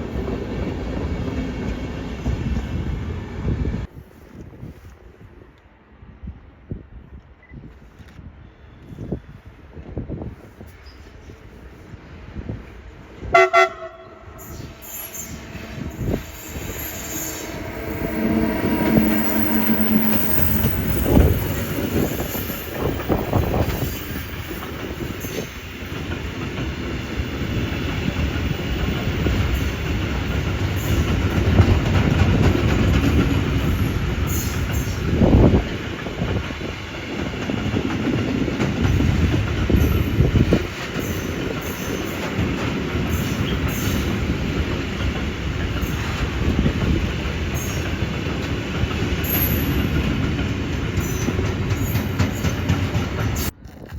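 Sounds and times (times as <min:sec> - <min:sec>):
train wheels rumbling on rails: 0:08.8 - 0:53.9
train horn blast: 0:13.3 - 0:23.6
train wheels knocking: 0:15.2 - 0:33.9, 0:44.9 - 0:53.6.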